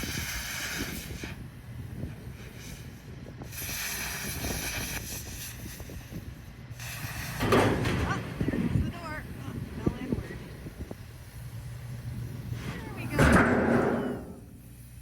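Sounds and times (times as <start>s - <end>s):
steady low rumble: 7.8s - 15.0s.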